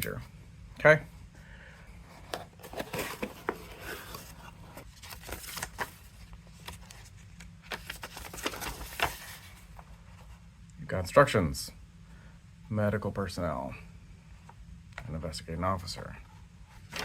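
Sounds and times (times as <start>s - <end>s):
box scraping: 2.1s - 6.0s
packaging rustling: 2.2s - 9.8s.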